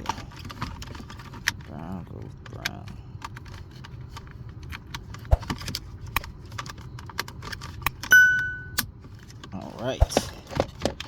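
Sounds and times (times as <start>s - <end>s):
electronic beep: 8.1s - 8.8s.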